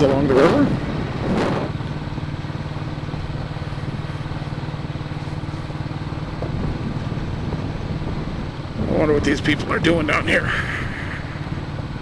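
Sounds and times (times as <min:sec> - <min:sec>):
motorcycle engine thumping: 0:01.3 - 0:08.3.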